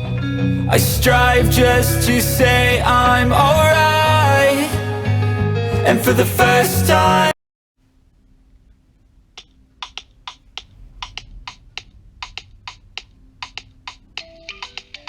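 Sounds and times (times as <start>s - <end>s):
short pitched notes: 0.0s - 5.4s
faint low hum: 7.8s - 15.0s
soft irregular clicks: 9.3s - 15.0s.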